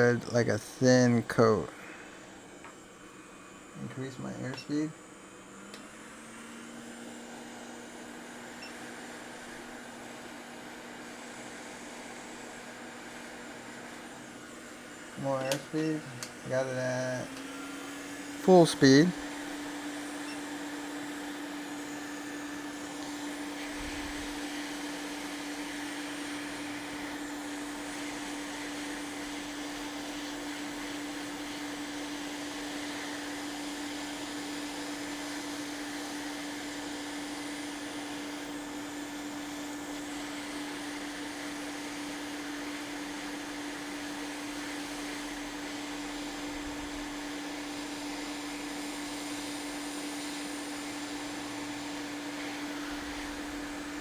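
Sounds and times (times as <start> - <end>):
motor hum: 0.0 - 54.0
hiss of hot air: 40.0 - 54.0.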